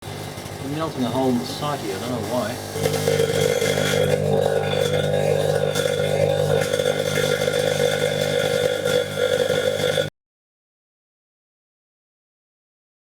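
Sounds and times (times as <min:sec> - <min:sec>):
loud electrical buzz: 0:00.0 - 0:10.1
faint electrical crackles: 0:00.2 - 0:10.1.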